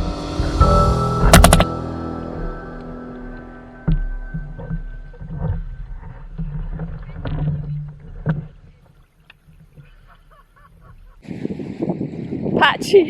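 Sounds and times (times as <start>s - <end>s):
low rumble: 0.0s - 8.3s.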